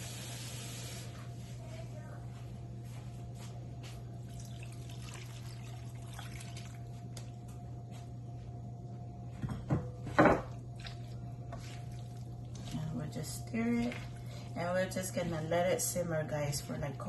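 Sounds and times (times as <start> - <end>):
steady low hum: 0.0 - 17.0
water trickling and splashing in pan: 4.3 - 7.0.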